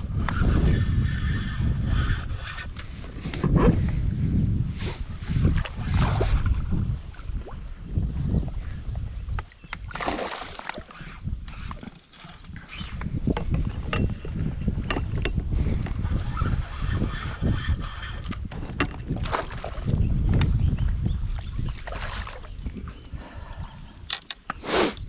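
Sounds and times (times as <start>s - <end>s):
wind on microphone: 0.0s - 25.0s
spinning reel clicking: 10.9s - 13.1s.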